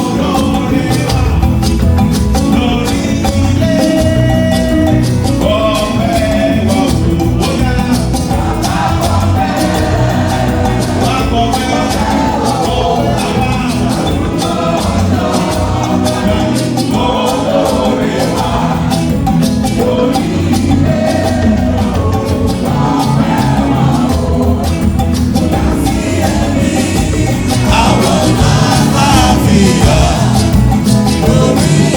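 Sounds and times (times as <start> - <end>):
band with percussion beat: 0.0 - 31.9
choir singing gospel: 0.0 - 31.9.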